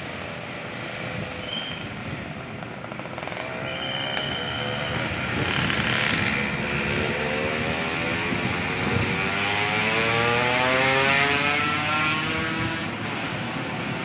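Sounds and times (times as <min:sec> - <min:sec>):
engine revving up: 0:03.2 - 0:12.9.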